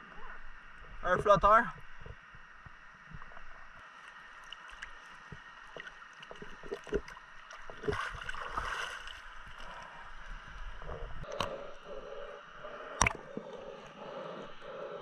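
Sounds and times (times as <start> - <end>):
water sloshing and splashing: 1.8 - 11.8
rush of water: 3.1 - 9.9.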